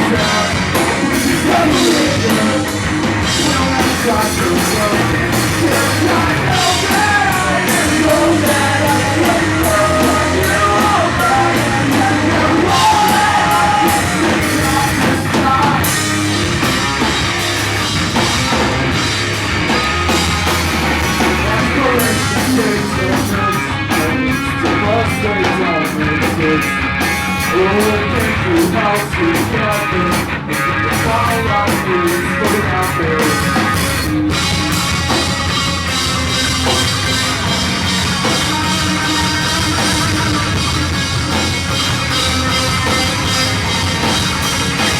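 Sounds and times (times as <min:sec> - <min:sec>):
person singing: 0:00.0 - 0:16.1, 0:21.2 - 0:26.8, 0:27.4 - 0:34.5
pop punk band playing live: 0:00.0 - 0:44.9.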